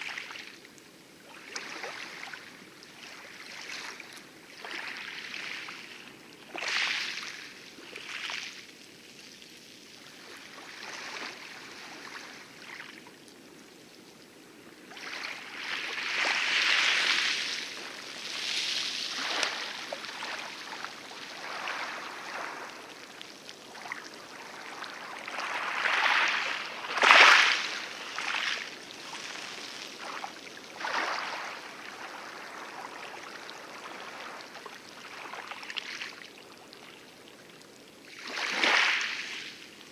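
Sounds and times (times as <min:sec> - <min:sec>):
waves lapping on coral: 0:00.0 - 0:39.9
water splash: 0:25.2 - 0:30.2.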